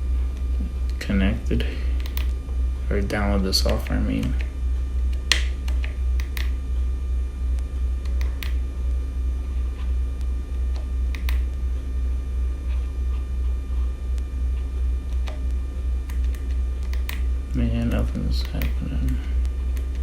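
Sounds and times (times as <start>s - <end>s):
steady low rumble: 0.0s - 20.0s
handlebar switch clicks: 2.0s - 2.3s, 11.1s - 11.5s.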